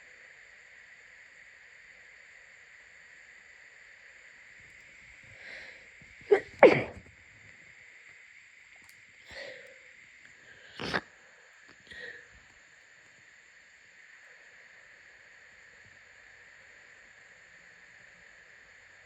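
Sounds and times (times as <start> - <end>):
person sneezing: 6.3 - 7.0, 10.7 - 11.0
person sniffing: 6.3 - 7.0, 10.5 - 11.0.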